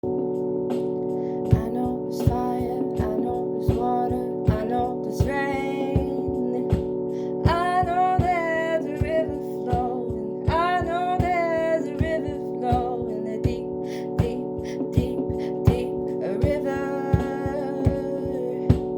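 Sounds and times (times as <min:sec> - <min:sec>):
person singing: 0:01.5 - 0:18.9.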